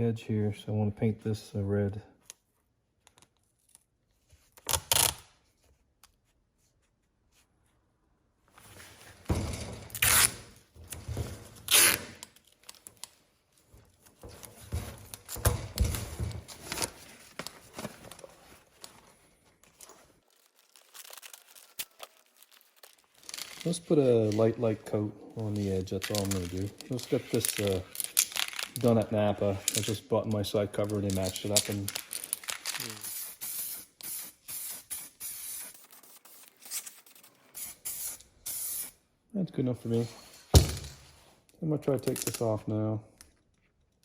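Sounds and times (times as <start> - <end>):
masking tape ripping: 4.6 - 5.3, 9.8 - 10.6, 11.6 - 13.2, 19.8 - 24.6, 25.4 - 29.1, 30.9 - 39.0
tape crinkling: 11.6 - 33.4.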